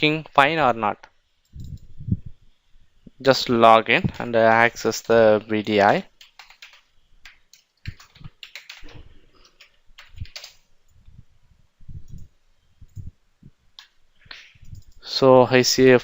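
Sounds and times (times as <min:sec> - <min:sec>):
computer keyboard typing: 0:04.1 - 0:10.7, 0:13.8 - 0:15.0.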